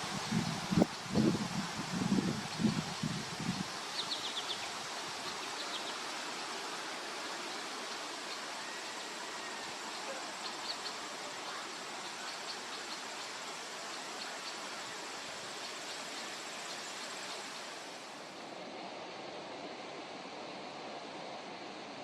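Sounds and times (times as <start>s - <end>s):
steady background hiss: 0.0s - 22.0s.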